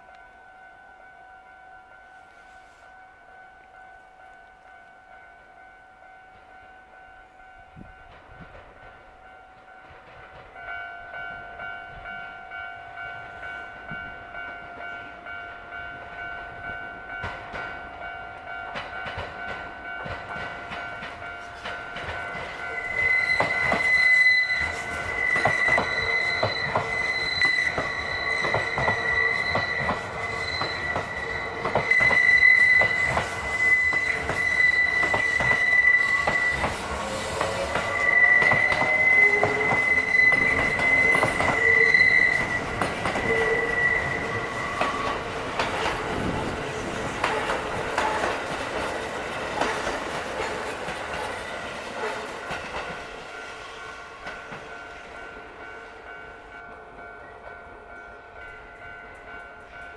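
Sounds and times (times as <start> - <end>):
train wheels clattering: 7.6 - 56.6
level-crossing bell ringing: 9.2 - 59.9
high wheel squeal: 22.3 - 48.3.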